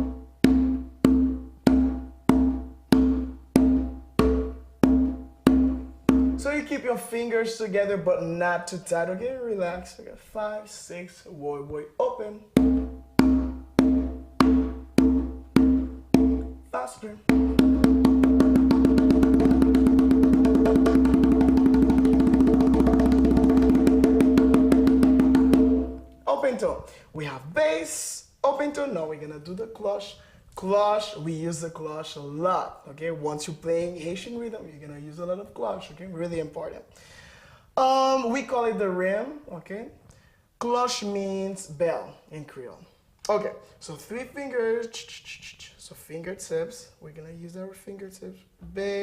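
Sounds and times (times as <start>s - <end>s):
hand drum strokes: 17.3s - 26.3s.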